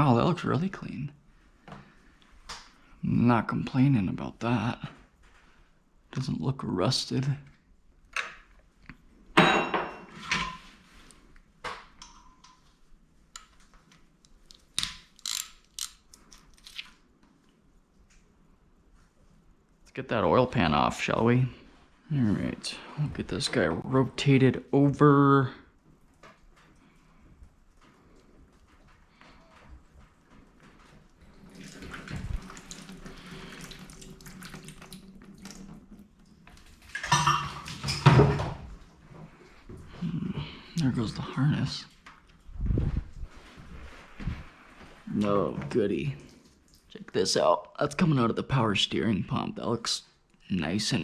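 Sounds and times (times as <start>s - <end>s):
fluid pouring and splashing: 29.8s - 38.5s, 46.1s - 47.1s.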